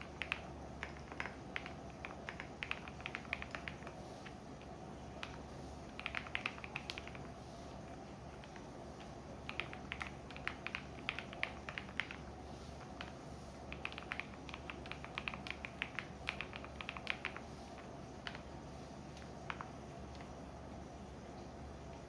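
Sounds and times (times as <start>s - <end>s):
typing on computer keyboard: 0.0s - 7.3s, 8.3s - 18.5s
washing machine humming: 0.0s - 22.0s.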